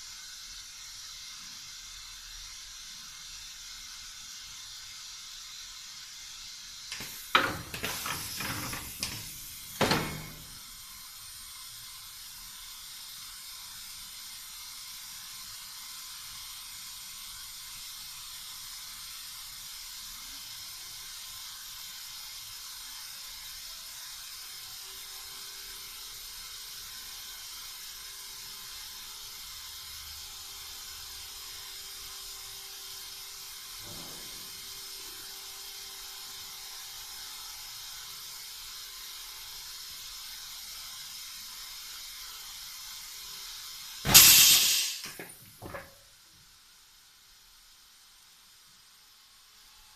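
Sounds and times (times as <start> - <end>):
steady hiss: 0.0 - 49.9
mechanical clacks and clatter: 6.9 - 10.6.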